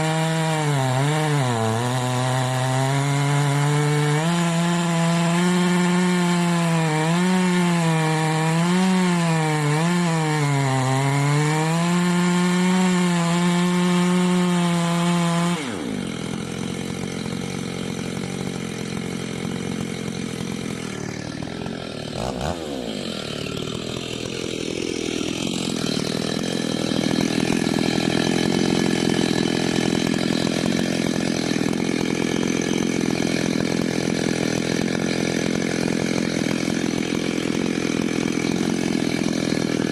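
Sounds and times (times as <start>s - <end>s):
chainsaw cutting wood: 0.0s - 39.9s.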